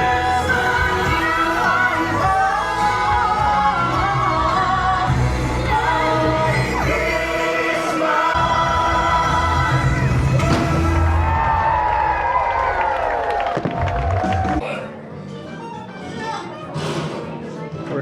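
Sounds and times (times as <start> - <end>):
pop band backing track: 0.0 - 11.7
singers holding long notes: 0.0 - 13.4.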